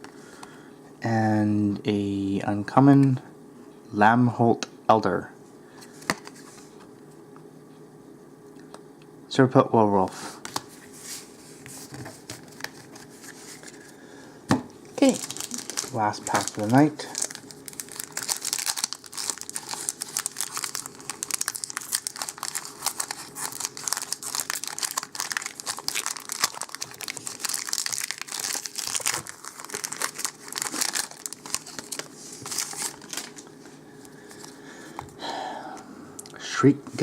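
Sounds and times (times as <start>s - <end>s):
foil wrapper tearing: 15.0s - 33.5s
foil wrapper crinkling: 15.0s - 33.6s.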